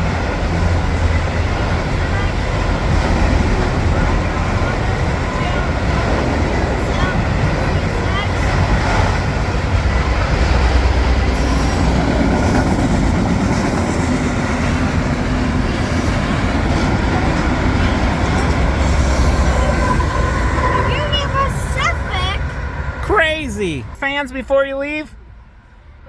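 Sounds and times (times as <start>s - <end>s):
freight train wheels rumbling: 0.0s - 26.0s.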